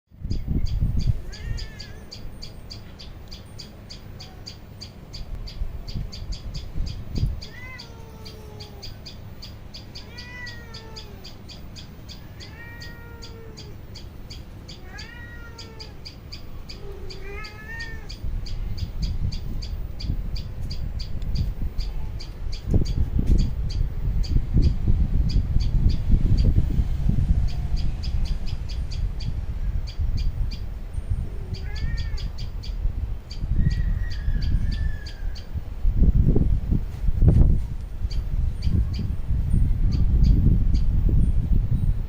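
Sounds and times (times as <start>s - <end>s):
rapid high chirping: 0.2s - 26.6s
cat meowing: 1.1s - 2.2s, 7.4s - 9.0s, 9.9s - 11.4s, 12.2s - 13.8s, 14.7s - 16.1s, 16.7s - 18.2s, 31.3s - 32.5s
low rumble: 18.2s - 31.6s.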